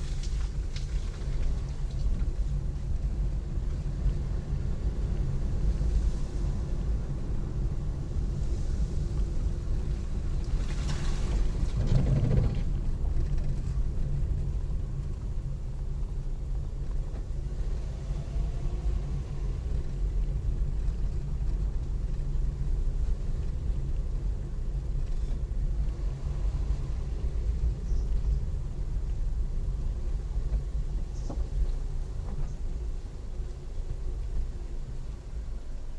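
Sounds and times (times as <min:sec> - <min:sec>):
car engine and road rumble: 0:00.0 - 0:35.9.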